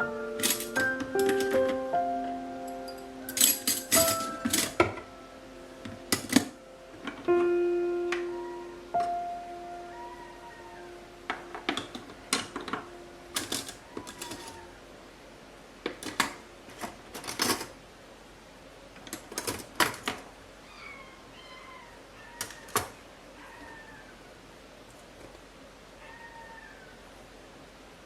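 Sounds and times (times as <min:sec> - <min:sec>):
kitchenware clacking and clinking: 0:00.4 - 0:01.8, 0:02.9 - 0:05.1, 0:06.1 - 0:06.6, 0:11.3 - 0:14.7, 0:15.9 - 0:17.8.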